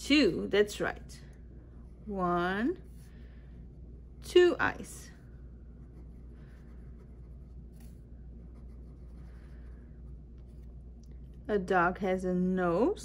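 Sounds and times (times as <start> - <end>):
steady low hum: 0.0 - 13.0
marker scratching on paper: 5.8 - 10.8.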